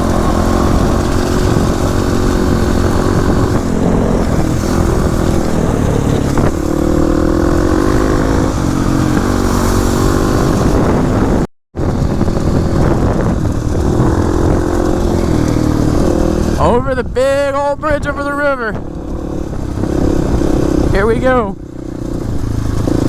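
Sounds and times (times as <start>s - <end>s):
dirt bike engine running: 0.0s - 23.0s.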